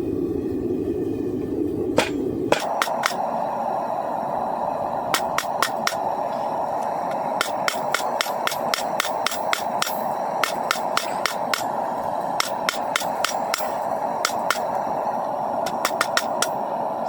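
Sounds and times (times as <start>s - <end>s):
forge burner hissing: 0.0s - 17.0s
hammer striking steel on anvil: 2.0s - 3.2s, 7.4s - 11.8s, 12.4s - 14.8s, 15.6s - 16.6s.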